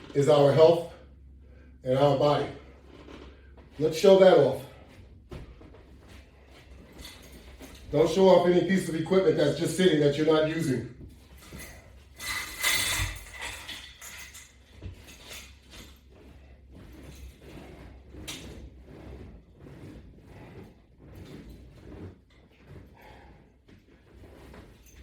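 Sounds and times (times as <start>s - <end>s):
strap attachment clicking and rattling: 11.2s - 16.2s.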